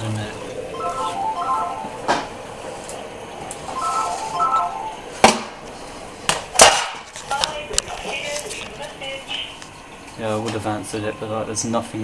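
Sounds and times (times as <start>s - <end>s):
telephone ringtone melody: 0.7s - 2.4s, 3.7s - 5.2s.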